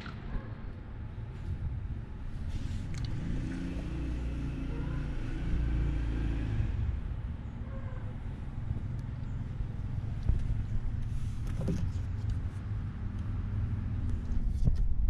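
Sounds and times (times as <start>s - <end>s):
car passing by: 2.5s - 7.2s.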